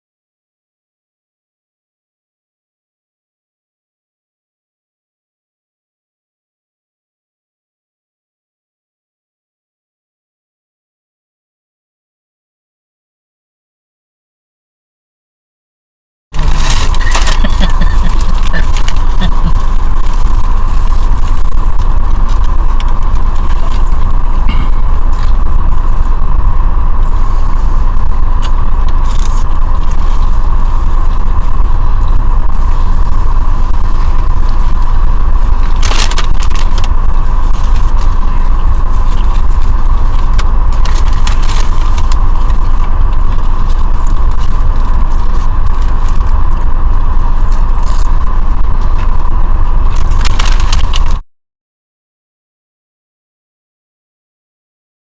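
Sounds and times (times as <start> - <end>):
constant hum: 16.3 - 51.2
loud low rumble: 16.4 - 51.2.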